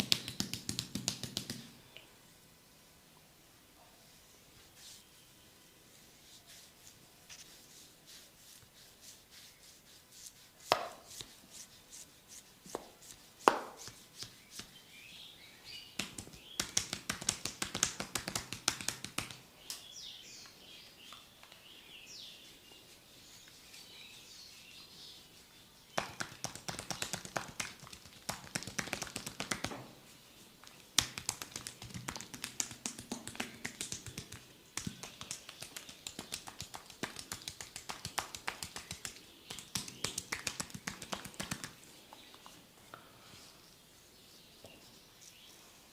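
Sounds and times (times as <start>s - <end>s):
fast steady tapping: 0.0s - 1.6s, 16.0s - 19.4s, 26.0s - 29.7s, 31.0s - 41.8s
sharp slaps on body: 0.0s - 1.7s, 10.7s - 11.0s, 13.5s - 14.7s, 16.0s - 19.4s, 26.0s - 29.9s, 31.0s - 41.8s.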